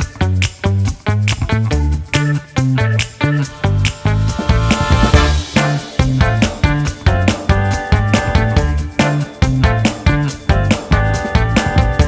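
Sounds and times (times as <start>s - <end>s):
upbeat funk music: 0.0s - 12.0s.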